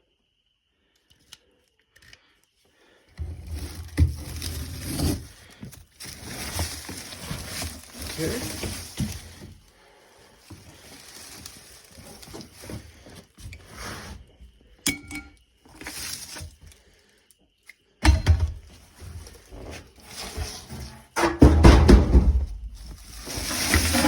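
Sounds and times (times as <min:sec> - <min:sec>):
ringing clink: 0:14.9 - 0:15.4
tools clinking and scraping: 0:14.9 - 0:16.1
heavy knock with scraping: 0:21.2 - 0:22.7.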